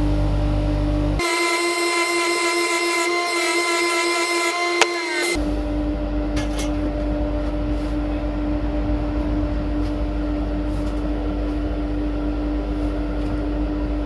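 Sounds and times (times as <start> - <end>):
belt grinder running: 1.2 - 5.4.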